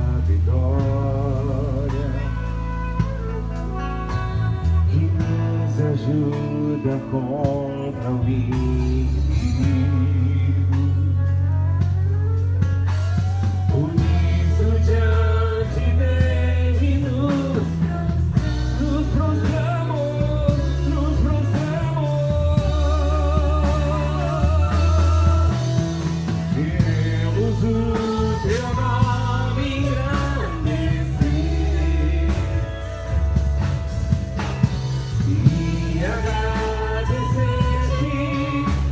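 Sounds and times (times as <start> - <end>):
bass line: 0.0 - 38.9
drums: 0.0 - 38.9
guitar: 0.0 - 38.9
person singing a melody: 0.0 - 38.9.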